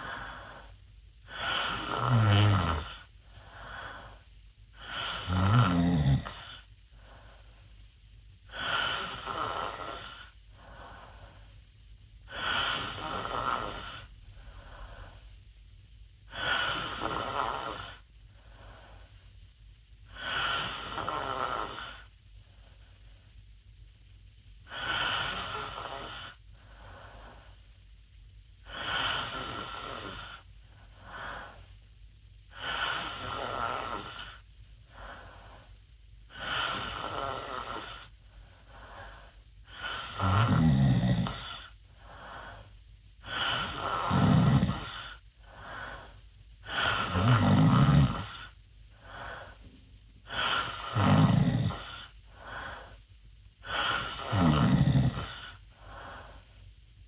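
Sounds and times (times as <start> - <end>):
soft breathing: 0.0 - 2.1, 2.8 - 5.3, 6.3 - 40.3, 41.2 - 47.5, 48.1 - 54.5, 55.1 - 57.0
boy snoring loudly: 1.3 - 3.1, 4.8 - 6.7, 8.5 - 10.3, 12.3 - 15.2, 16.3 - 18.0, 20.1 - 22.1, 24.7 - 26.4, 28.6 - 30.5, 32.5 - 34.4, 36.3 - 38.1, 39.7 - 41.7, 43.2 - 45.2, 46.6 - 48.6, 50.2 - 52.1, 53.6 - 56.0.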